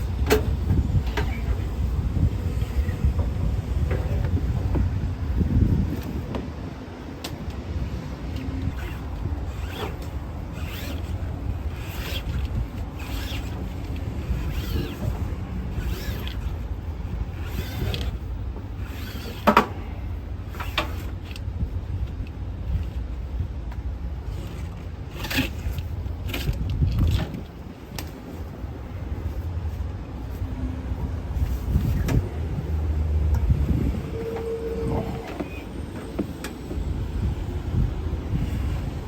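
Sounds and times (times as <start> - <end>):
steady low rumble: 0.0 - 19.0, 19.8 - 39.0.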